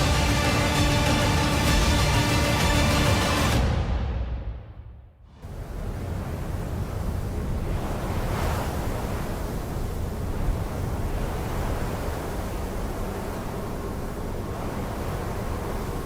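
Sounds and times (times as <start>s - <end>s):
low rushing rumble: 0.0s - 8.2s.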